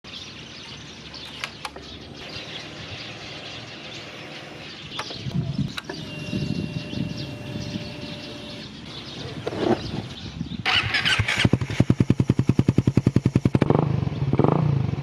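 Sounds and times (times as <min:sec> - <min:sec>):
small birds chirping: 0:00.0 - 0:15.0
sharp clicks: 0:01.2 - 0:01.9, 0:04.9 - 0:06.1.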